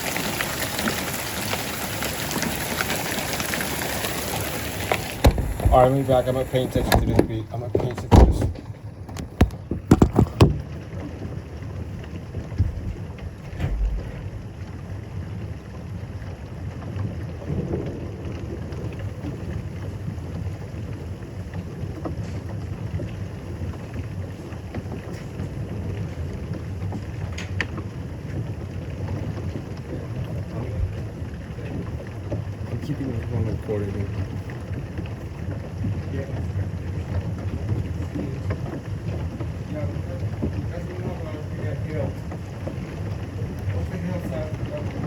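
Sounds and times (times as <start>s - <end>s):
rain: 0.0s - 45.0s
wind: 0.0s - 45.0s
sharp knocks: 5.0s - 10.6s.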